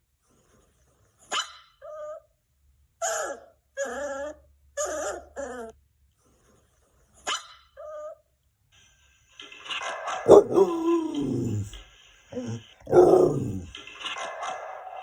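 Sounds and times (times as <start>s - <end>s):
dog barking: 10.2s - 11.8s, 12.4s - 13.7s.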